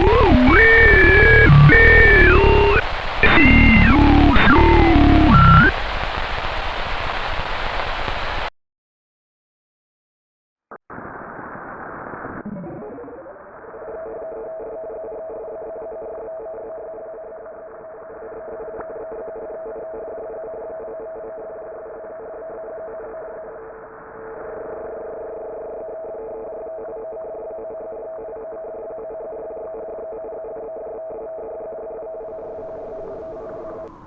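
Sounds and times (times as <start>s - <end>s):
telephone line tone: 0.0s - 5.8s
tone sliding downward: 0.0s - 5.8s
line static hiss: 0.0s - 8.5s, 32.2s - 34.0s.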